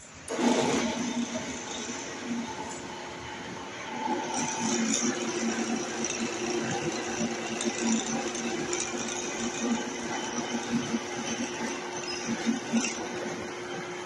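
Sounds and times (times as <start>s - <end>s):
bench drill motor humming: 3.9s - 14.0s.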